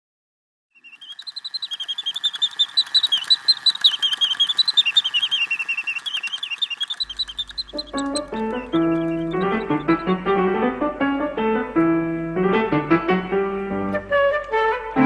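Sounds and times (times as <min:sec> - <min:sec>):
mechanical bird whistle warbling: 0:00.8 - 0:10.2
piano music: 0:07.9 - 0:14.2.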